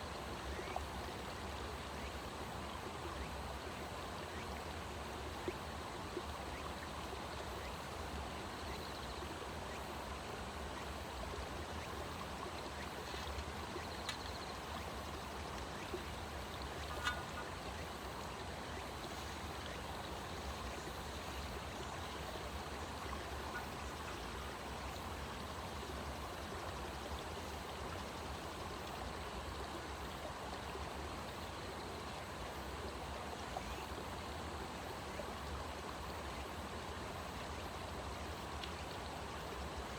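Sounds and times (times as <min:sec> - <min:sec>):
running water rushing: 0:09.5 - 0:31.2.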